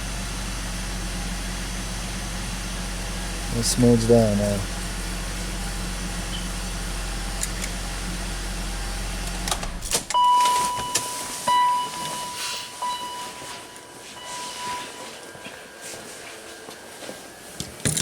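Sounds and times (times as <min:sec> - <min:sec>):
car engine idling: 0:00.0 - 0:09.9
electronic beep: 0:10.2 - 0:15.8.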